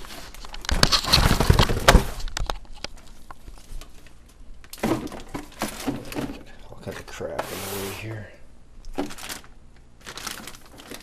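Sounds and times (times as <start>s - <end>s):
cardboard box rustling and scraping: 7.4s - 8.2s.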